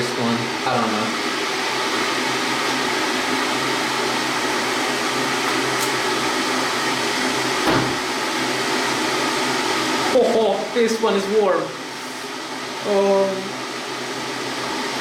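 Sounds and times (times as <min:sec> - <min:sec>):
water heater humming: 0:00.0 - 0:15.0
single knock: 0:07.6 - 0:08.0.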